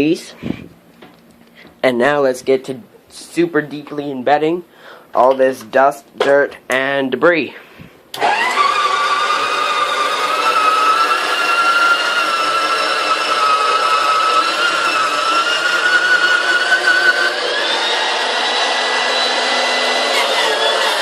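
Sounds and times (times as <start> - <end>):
floor polisher motor whining: 8.2 - 21.0.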